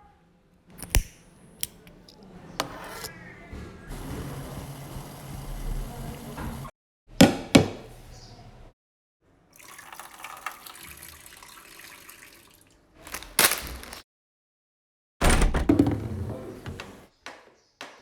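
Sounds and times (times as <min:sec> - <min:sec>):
steady kitchen noise: 0:00.7 - 0:08.7, 0:15.2 - 0:17.1
tap water running into sink: 0:09.6 - 0:13.2.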